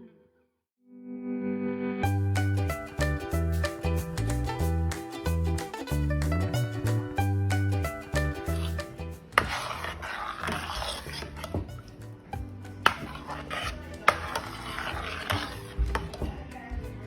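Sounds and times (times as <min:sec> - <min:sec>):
background music: 0:01.1 - 0:17.0
food preparation scraping: 0:07.5 - 0:17.0.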